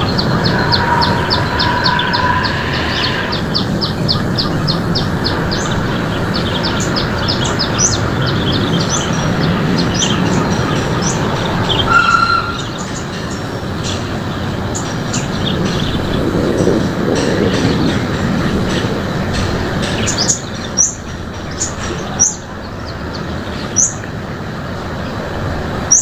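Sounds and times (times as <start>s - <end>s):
bird whistle: 0.0s - 5.7s, 9.8s - 13.0s
small birds chirping: 0.0s - 18.7s
steady low rumbling noise: 0.0s - 25.9s.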